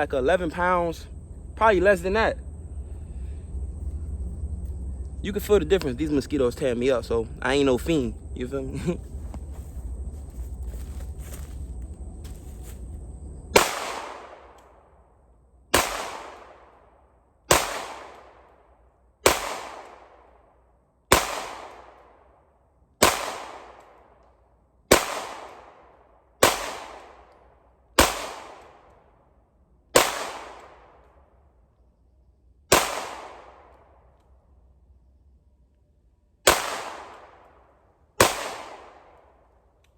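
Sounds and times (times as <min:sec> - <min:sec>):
pistol shots echoing: 0:13.5 - 0:14.9, 0:15.7 - 0:16.9, 0:17.5 - 0:18.5, 0:19.2 - 0:20.4, 0:21.1 - 0:22.2, 0:23.0 - 0:24.2, 0:24.9 - 0:27.3, 0:28.0 - 0:28.9, 0:29.9 - 0:31.1, 0:32.7 - 0:34.0, 0:36.4 - 0:39.5.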